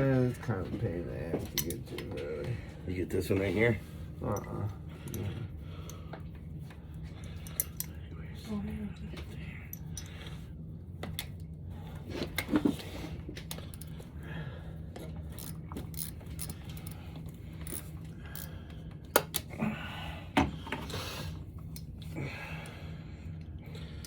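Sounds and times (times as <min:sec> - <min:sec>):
steady low hum: 0:00.0 - 0:24.0
metal tools clinking on engine: 0:07.3 - 0:07.9, 0:15.4 - 0:17.0.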